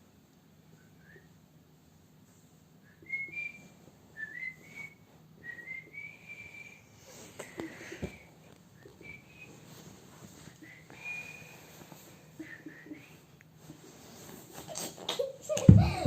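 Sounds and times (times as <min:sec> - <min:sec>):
person whistling: 0:02.9 - 0:06.9, 0:07.9 - 0:09.6, 0:10.5 - 0:11.7, 0:12.4 - 0:13.1.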